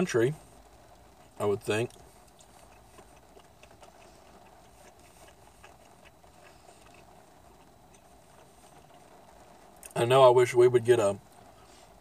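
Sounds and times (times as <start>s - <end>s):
quiet room hiss: 0.0s - 12.0s
chewing food: 1.2s - 10.0s.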